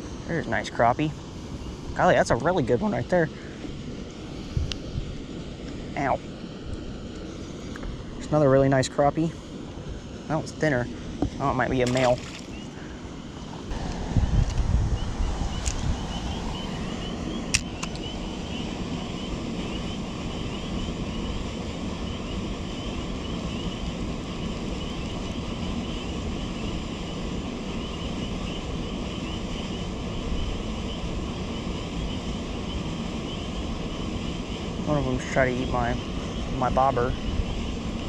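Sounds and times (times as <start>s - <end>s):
wind buffeting microphone: 0.0s - 6.9s, 10.8s - 38.0s
high chirping chorus: 10.1s - 38.0s
sharp click: 17.5s - 18.1s.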